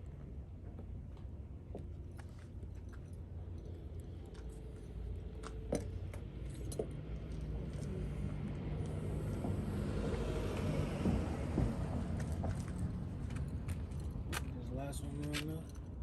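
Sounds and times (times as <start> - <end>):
light clicks and clinks: 2.3 - 7.9
vehicle passing by rumbling: 6.9 - 14.3.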